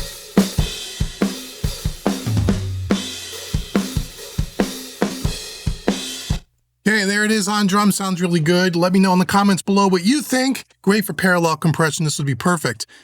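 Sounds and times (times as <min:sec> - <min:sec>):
drum kit playing a groove: 0:00.0 - 0:06.5.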